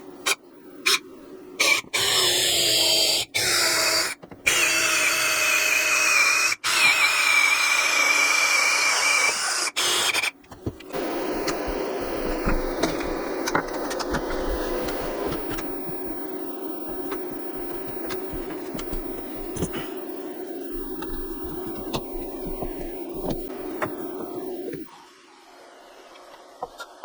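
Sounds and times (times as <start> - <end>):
power tool whining: 1.6 - 10.3.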